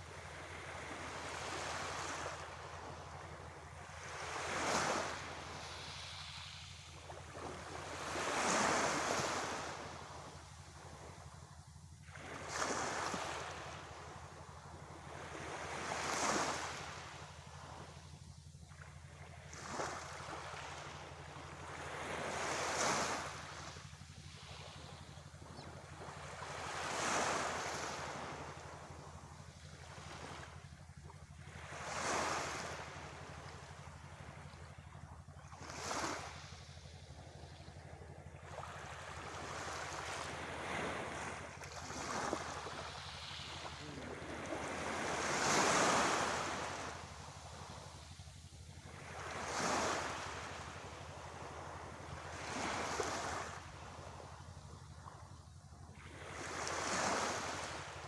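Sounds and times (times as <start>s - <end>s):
sea waves breaking on shore: 0.0s - 11.3s, 12.1s - 18.3s, 19.0s - 30.9s, 31.5s - 34.4s, 35.6s - 37.0s, 38.5s - 58.0s
steady low hum: 0.0s - 58.0s.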